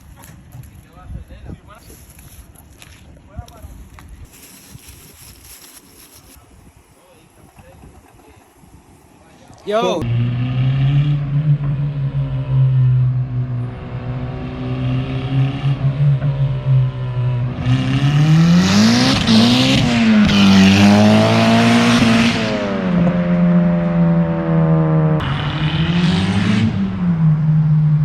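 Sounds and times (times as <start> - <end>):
car engine revving: 10.0 - 28.0.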